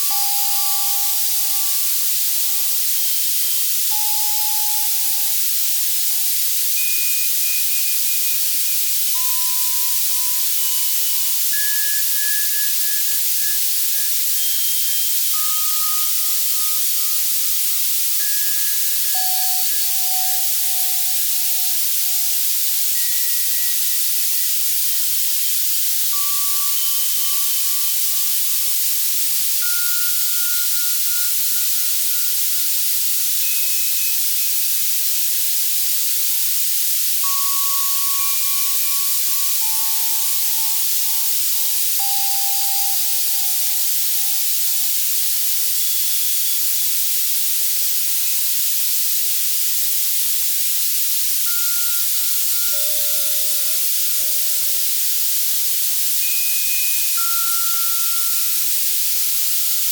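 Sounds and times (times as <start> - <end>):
soft synthesized bell tones: 37.2 - 45.0, 51.5 - 59.1.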